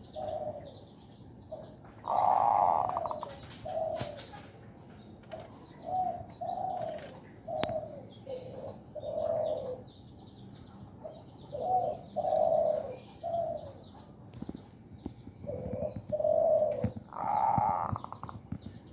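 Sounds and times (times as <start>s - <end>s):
dove cooing: 0.0s - 0.8s, 1.5s - 4.6s, 5.3s - 10.0s, 11.0s - 14.0s, 15.4s - 18.4s.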